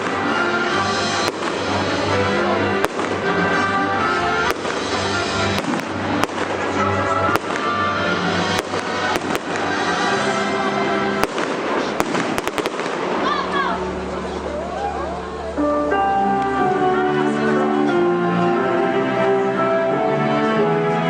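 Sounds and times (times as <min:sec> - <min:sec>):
steady music: 0:00.0 - 0:21.0
firework shells bursting: 0:01.0 - 0:02.0, 0:02.8 - 0:03.6, 0:04.4 - 0:10.4, 0:11.2 - 0:13.3.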